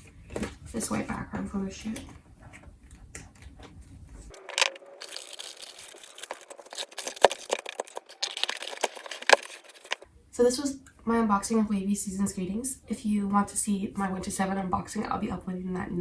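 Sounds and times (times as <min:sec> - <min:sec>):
packaging rustling and crinkling: 0:01.8 - 0:10.0.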